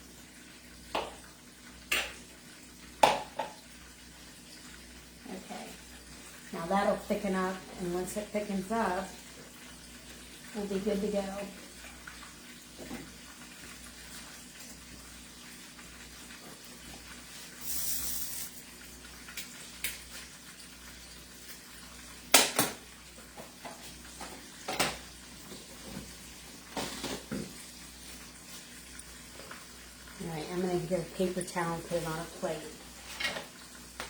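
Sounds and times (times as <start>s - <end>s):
faint steady hiss: 17.4s - 18.7s
cookware and utensils clattering: 33.0s - 33.6s.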